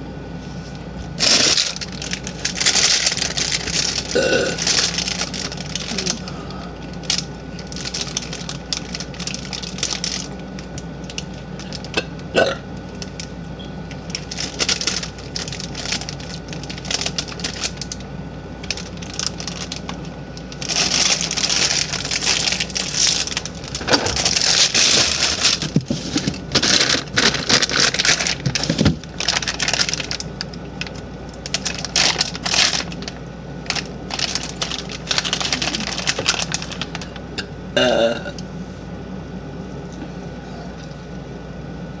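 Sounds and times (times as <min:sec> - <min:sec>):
crackling and rustling: 0:00.5 - 0:12.0, 0:12.8 - 0:18.0, 0:18.6 - 0:37.3
woman burping: 0:04.2 - 0:04.6, 0:12.3 - 0:12.6, 0:37.8 - 0:38.4.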